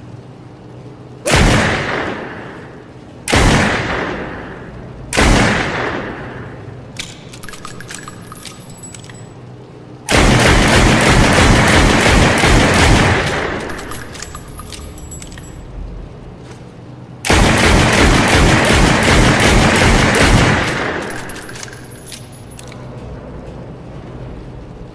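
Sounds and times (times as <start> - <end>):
high metallic ringing: 7.3 - 9.6, 13.6 - 15.8, 21.0 - 22.9.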